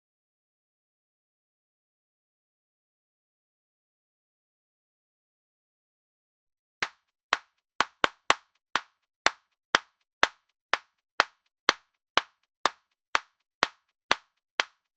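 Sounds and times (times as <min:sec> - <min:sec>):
person clapping hands: 0:06.8 - 0:14.9.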